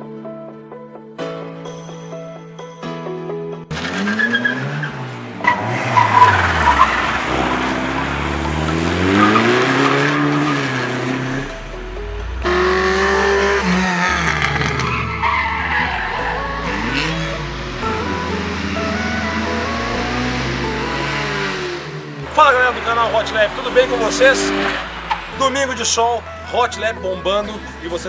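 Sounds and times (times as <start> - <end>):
car engines revving hard: 3.7 - 16.2, 21.2 - 26.3
tyres squealing: 12.4 - 28.0.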